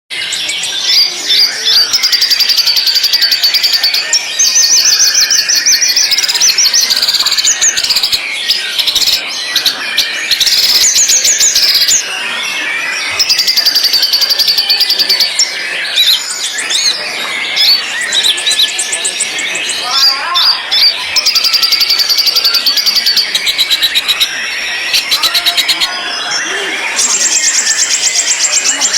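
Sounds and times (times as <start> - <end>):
bird singing: 0.1 - 28.9.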